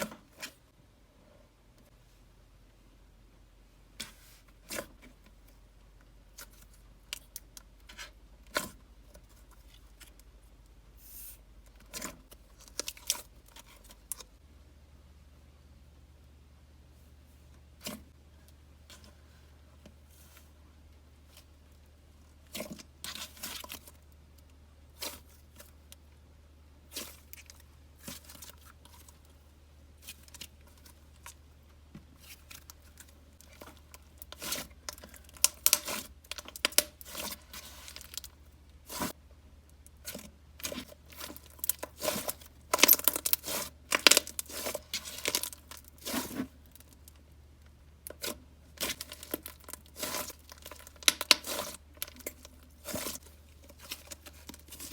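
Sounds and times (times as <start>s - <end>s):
slime crackling and popping: 33.4s - 39.1s, 40.1s - 47.2s, 48.0s - 53.2s.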